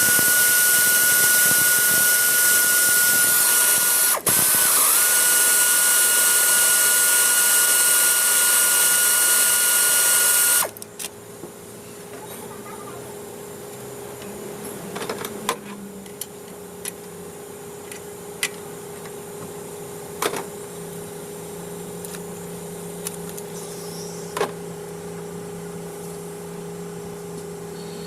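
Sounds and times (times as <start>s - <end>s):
steady background hum: 9.9s - 28.0s.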